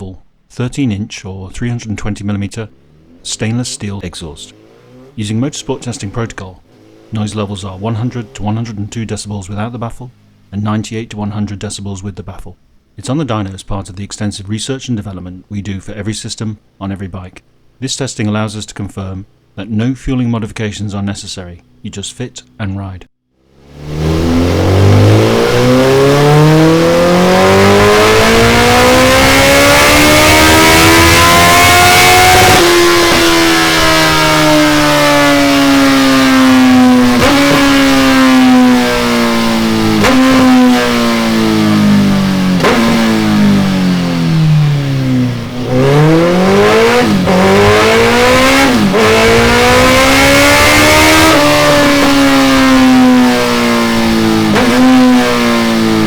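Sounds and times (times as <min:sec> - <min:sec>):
motorcycle engine revving: 0:02.4 - 0:10.5, 0:23.4 - 0:56.0.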